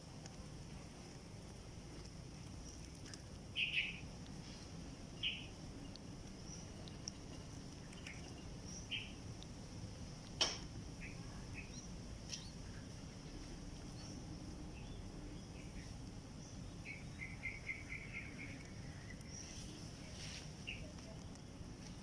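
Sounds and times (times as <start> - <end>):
bird chick chirping: 3.5 - 4.1, 5.2 - 9.4, 13.9 - 19.6.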